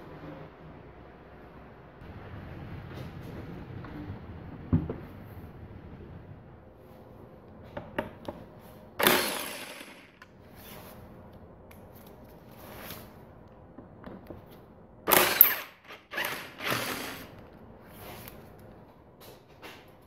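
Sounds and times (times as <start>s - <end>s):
loud rasping tool bursts: 9.0s - 10.2s, 15.1s - 17.3s.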